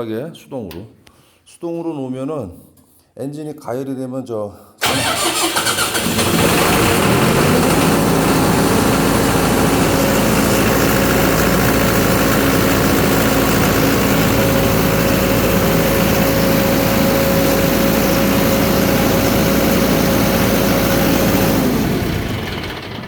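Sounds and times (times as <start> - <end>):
pump engine running: 4.8 - 23.0
high steady whine: 6.5 - 22.4.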